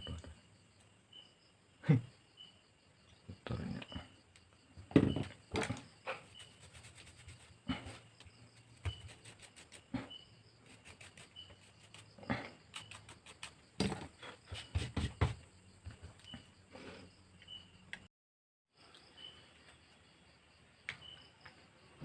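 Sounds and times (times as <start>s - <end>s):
faint high chirp: 17.4s - 18.1s, 18.9s - 20.0s, 20.8s - 21.6s.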